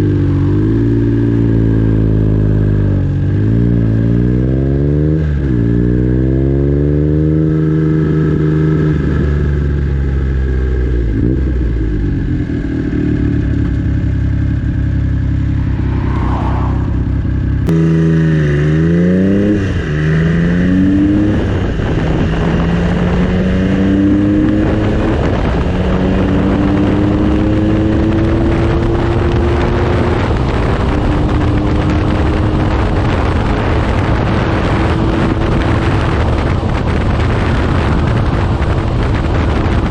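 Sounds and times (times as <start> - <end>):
motorcycle engine accelerating: 0.0 - 39.9
wind noise: 0.0 - 39.9.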